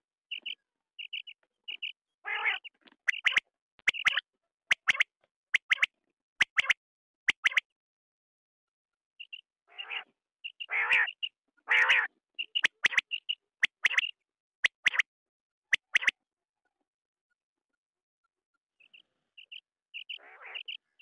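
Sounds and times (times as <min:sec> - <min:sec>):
quail calling: 0:00.3 - 0:04.2, 0:09.2 - 0:15.0, 0:18.9 - 0:21.0.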